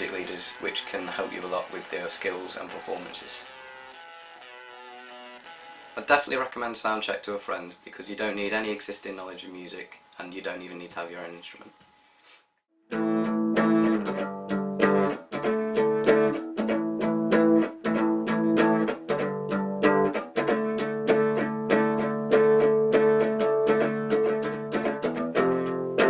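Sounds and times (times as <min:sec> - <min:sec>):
guitar strumming chords: 0:00.0 - 0:04.0, 0:12.9 - 0:26.0.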